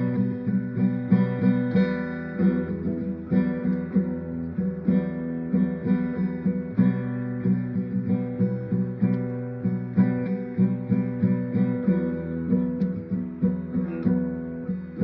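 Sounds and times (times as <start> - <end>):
acoustic guitar strumming chords: 0.0 - 15.0.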